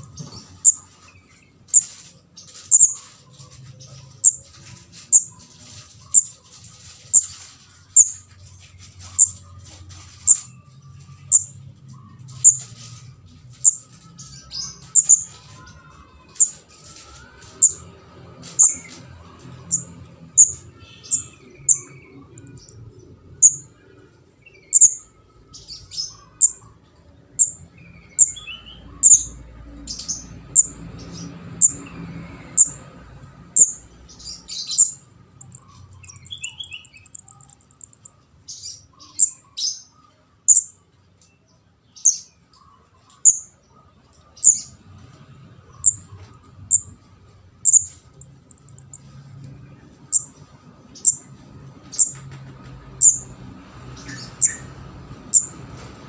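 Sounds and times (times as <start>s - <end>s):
bird high sharp chips: 0.0s - 11.6s, 12.2s - 23.7s, 33.6s - 39.4s, 47.7s - 49.1s
bird rapid trill: 0.0s - 11.6s, 12.3s - 17.8s, 19.6s - 22.8s, 23.4s - 23.7s, 24.6s - 26.6s, 27.4s - 31.9s, 32.5s - 32.9s, 33.5s - 39.8s, 45.8s - 47.0s, 47.6s - 49.0s, 50.1s - 50.4s, 51.0s - 52.2s, 53.0s - 53.3s, 54.0s - 54.7s, 55.3s - 55.6s.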